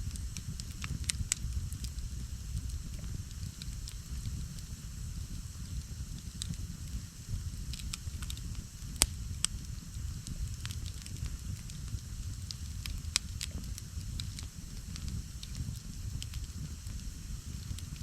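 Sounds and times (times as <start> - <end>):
campfire rumble: 0.0 - 18.0
fire crackles and pops: 0.0 - 18.0.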